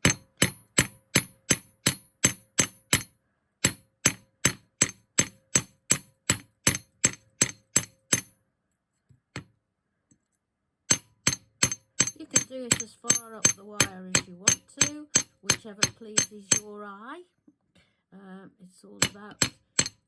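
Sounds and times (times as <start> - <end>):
hammer striking metal wire: 0.0 - 8.4, 10.9 - 16.7, 19.0 - 20.0.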